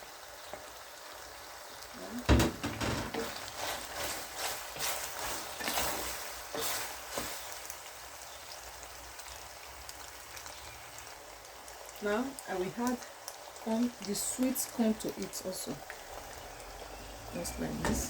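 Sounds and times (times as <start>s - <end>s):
faint sizzle: 0.0s - 18.0s
food stirred in pot: 0.1s - 18.0s
knock on cooking pot: 2.3s - 3.3s.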